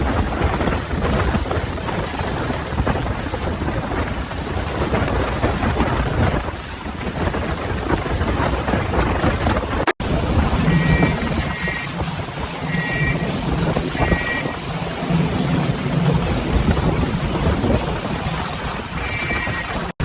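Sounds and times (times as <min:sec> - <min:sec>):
heavy rain: 0:00.0 - 0:20.0.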